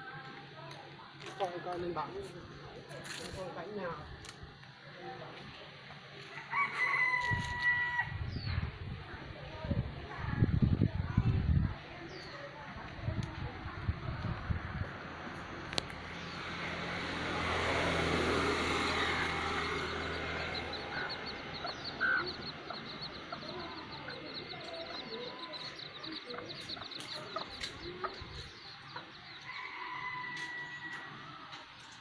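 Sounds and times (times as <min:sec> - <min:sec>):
chickens clucking: 0:18.7 - 0:29.5.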